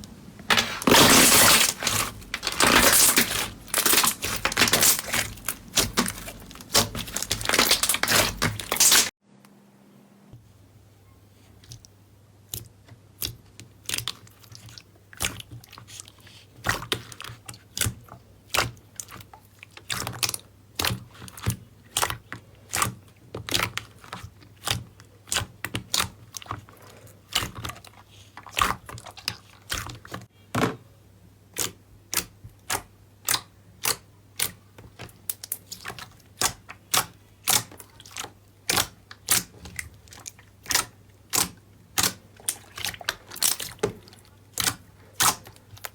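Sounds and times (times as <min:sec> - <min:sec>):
slime crackling and popping: 0:00.6 - 0:09.1.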